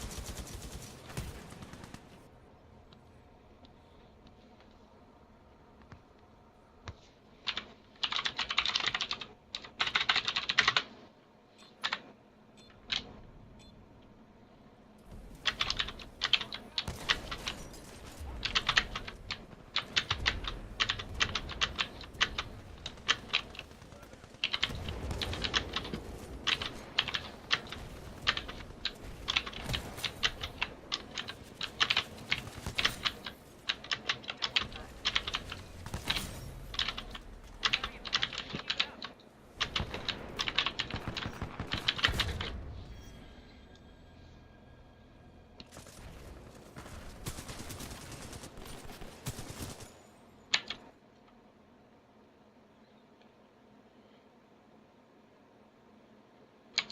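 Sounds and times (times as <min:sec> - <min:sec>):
mechanical keyboard typing: 0:07.5 - 0:10.9, 0:15.4 - 0:17.5, 0:18.4 - 0:23.7, 0:24.4 - 0:42.3.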